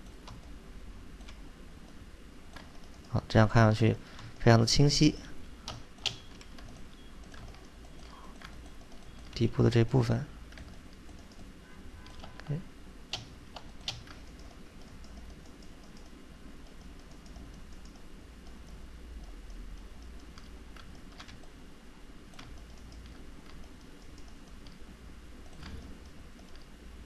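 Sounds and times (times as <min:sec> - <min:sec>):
keyboard and mouse clicks: 0:00.0 - 0:00.6, 0:01.2 - 0:03.2, 0:05.7 - 0:09.4, 0:10.5 - 0:21.6, 0:22.3 - 0:24.8, 0:25.4 - 0:26.7
low steady hum: 0:00.0 - 0:27.0.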